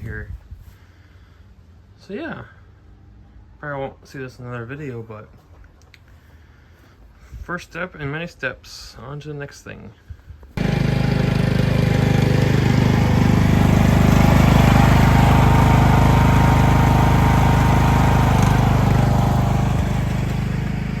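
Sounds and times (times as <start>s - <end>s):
lawn mower engine running: 10.6s - 21.0s.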